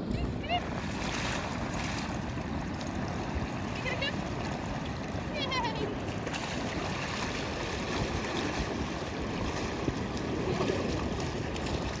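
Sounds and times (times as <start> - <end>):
wind rumbling on microphone: 0.0 - 12.0.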